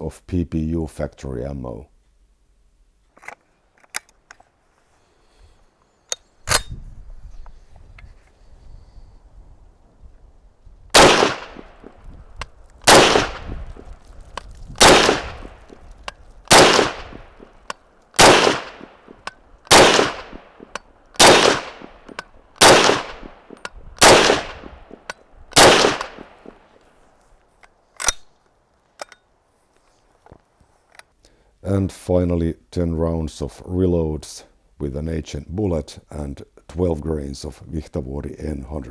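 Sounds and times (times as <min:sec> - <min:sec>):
rifle shots with echo: 0:10.9 - 0:11.9, 0:12.8 - 0:13.8, 0:14.8 - 0:15.6, 0:16.5 - 0:17.5, 0:18.2 - 0:25.0, 0:25.6 - 0:26.6.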